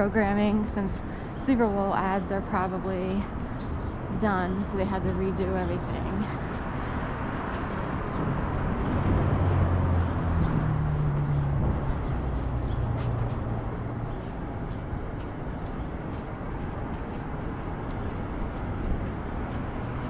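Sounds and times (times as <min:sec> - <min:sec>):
street noise: 0:00.0 - 0:20.0
vehicle engine passing: 0:06.0 - 0:14.7.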